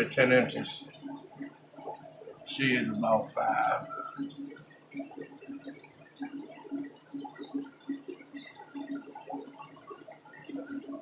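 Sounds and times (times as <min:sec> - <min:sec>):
aquarium water trickling and bubbling: 0:00.0 - 0:11.0.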